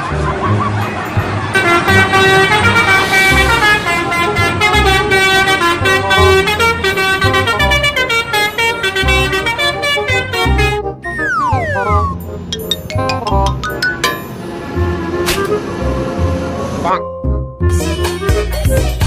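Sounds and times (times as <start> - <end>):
bus air horns playing a tune: 1.5 - 10.9.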